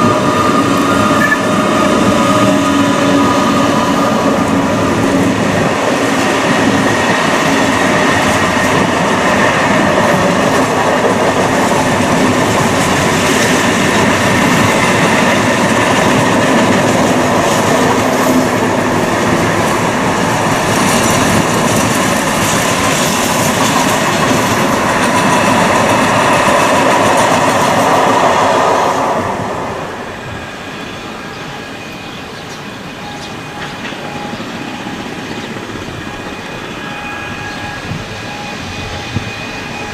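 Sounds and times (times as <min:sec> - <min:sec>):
train wheels clattering over rail joints: 0:05.6 - 0:28.3.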